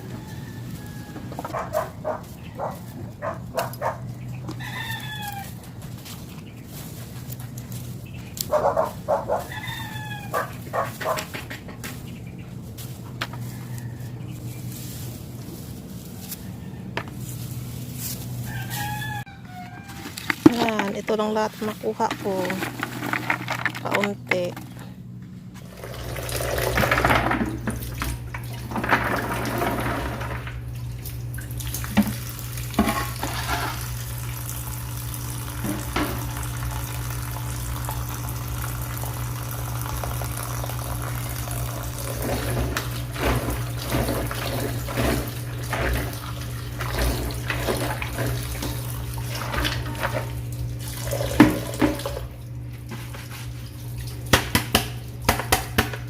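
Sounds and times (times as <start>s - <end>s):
things clacking in water: 19.7s - 24.8s, 25.6s - 56.0s
tap water running into sink: 25.7s - 53.1s.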